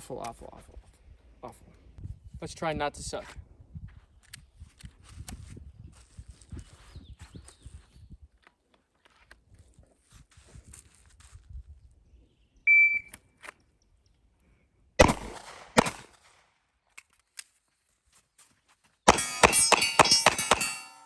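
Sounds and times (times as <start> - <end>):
shot timer beep: 12.7 - 13.2
handgun shots: 15.0 - 16.1, 19.1 - 21.0.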